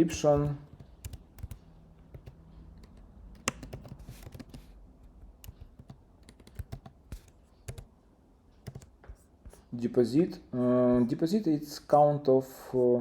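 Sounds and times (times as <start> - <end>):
keyboard typing: 0.0 - 7.9, 8.6 - 9.2.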